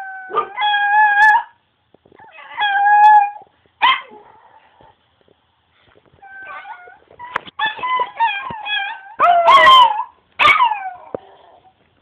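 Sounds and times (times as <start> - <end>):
small dog howling and whining: 0.0 - 1.6, 2.2 - 4.8, 6.2 - 11.7.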